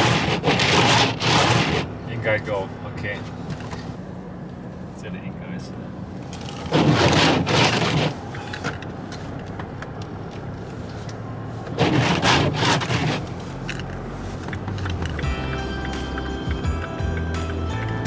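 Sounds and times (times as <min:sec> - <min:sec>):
loud scraping sweeps: 0:00.0 - 0:02.0, 0:06.6 - 0:08.5, 0:11.7 - 0:14.5
background music: 0:15.2 - 0:18.0.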